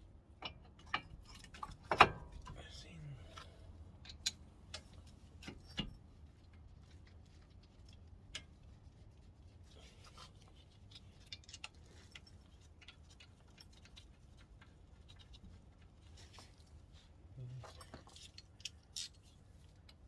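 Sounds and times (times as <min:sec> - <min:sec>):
low steady hum: 0:00.0 - 0:20.0
soft rustle: 0:04.7 - 0:20.0.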